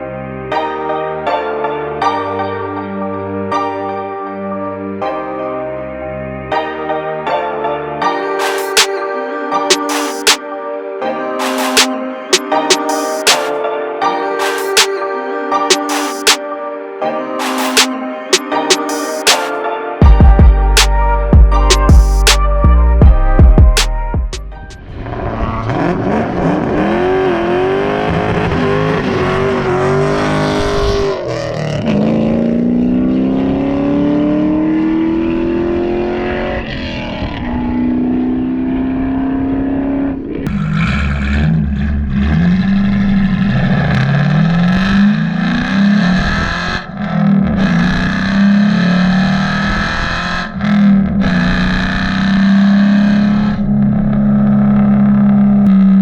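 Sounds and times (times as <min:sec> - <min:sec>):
car engine accelerating hard: 0:24.8 - 0:56.0.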